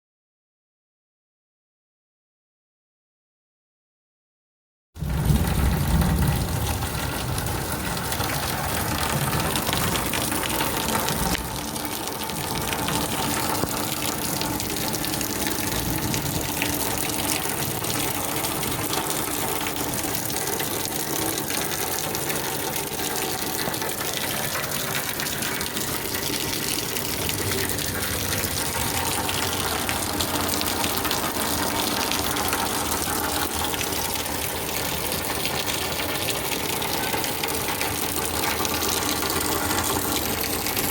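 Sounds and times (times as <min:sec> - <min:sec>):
heavy rain pouring: 0:05.0 - 0:40.9.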